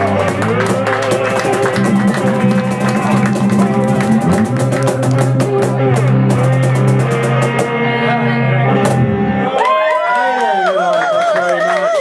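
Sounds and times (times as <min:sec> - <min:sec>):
cajon: 0:00.0 - 0:07.7
low held notes: 0:00.0 - 0:09.5
guitar: 0:00.0 - 0:10.0.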